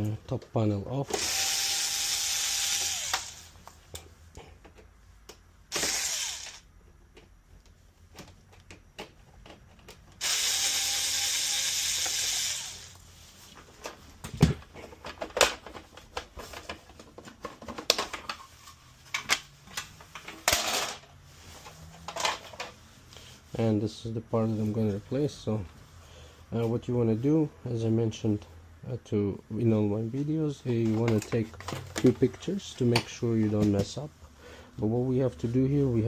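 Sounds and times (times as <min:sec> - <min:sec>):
electric screwdriver running: 0:01.1 - 0:03.6, 0:05.7 - 0:06.6, 0:10.2 - 0:13.0.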